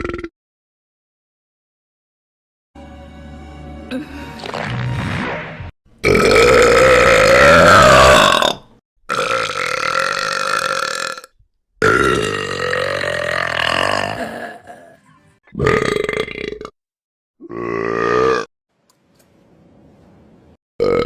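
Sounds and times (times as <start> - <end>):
drawn-out burps: 0.0 - 0.3, 6.0 - 16.8, 17.4 - 18.5, 20.8 - 21.0.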